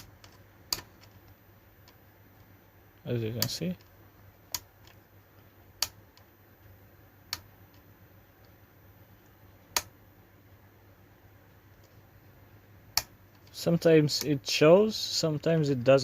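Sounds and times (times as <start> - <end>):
low steady hum: 0.0 - 16.0
power supply switch clicks: 9.7 - 9.9.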